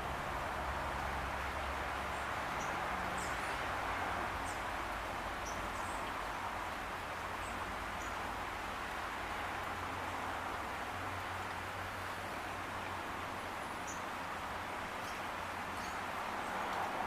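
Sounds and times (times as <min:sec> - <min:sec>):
small birds chirping: 0:15.0 - 0:16.6.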